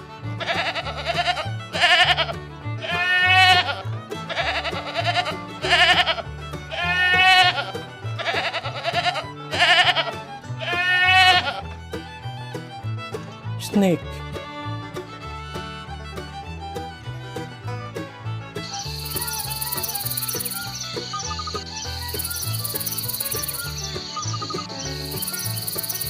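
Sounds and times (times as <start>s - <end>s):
background music: 0.0s - 26.0s
sheep bleating: 0.4s - 11.6s, 18.7s - 26.0s.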